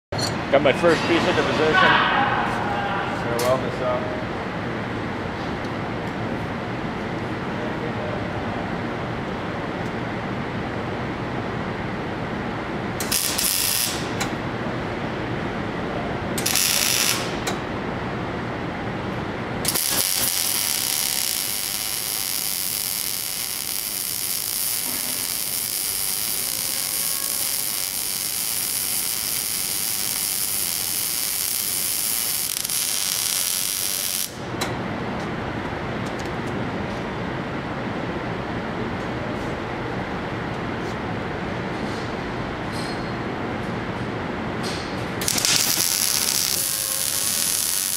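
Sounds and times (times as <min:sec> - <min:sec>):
low workshop hum: 0:00.2 - 0:47.9
arc welding crackling sizzle: 0:13.0 - 0:14.4, 0:16.4 - 0:17.6, 0:19.6 - 0:34.4, 0:45.2 - 0:47.9.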